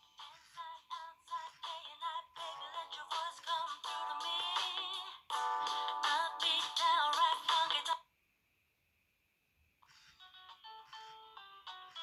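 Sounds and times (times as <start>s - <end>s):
synthesized ringtone melody: 3.9s - 7.1s.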